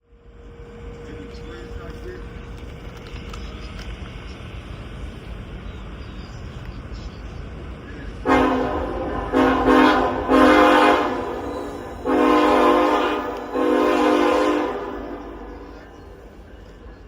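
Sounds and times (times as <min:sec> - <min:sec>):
low train rumble: 0:00.0 - 0:17.0
train air horn blasts: 0:08.2 - 0:16.2.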